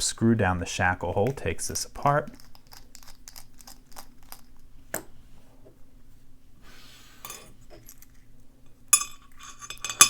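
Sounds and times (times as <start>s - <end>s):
metal scrape: 7.0s - 7.6s.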